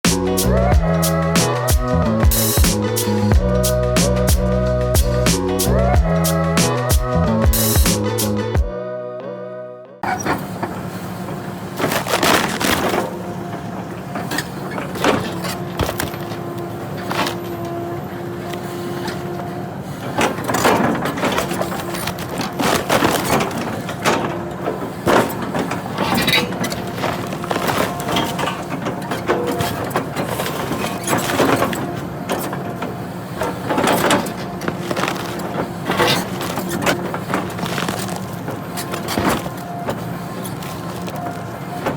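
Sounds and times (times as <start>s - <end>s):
excavator engine and hydraulics: 0.0s - 41.9s
wood cracking and splintering: 11.7s - 17.9s, 20.0s - 41.9s.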